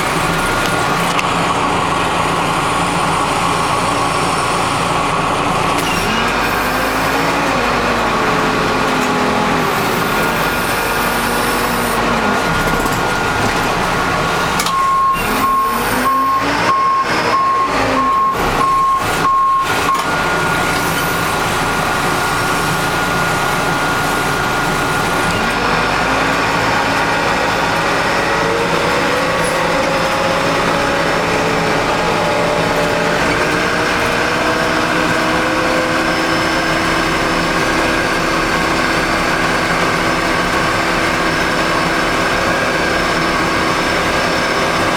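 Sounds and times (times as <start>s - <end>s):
diesel engine revving: 0.0s - 44.9s
reversing alarm beeping: 14.6s - 25.3s, 34.5s - 39.8s.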